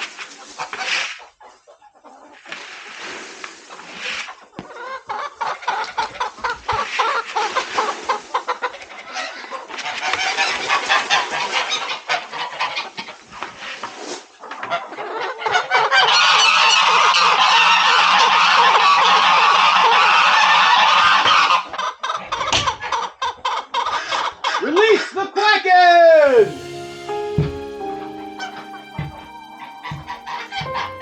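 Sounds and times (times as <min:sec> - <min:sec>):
geese honking: 0:26.4 - 0:31.0.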